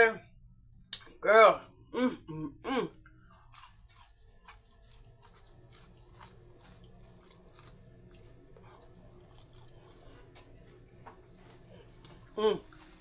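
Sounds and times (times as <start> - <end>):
chewing crispy fried chicken: 2.9 - 13.0.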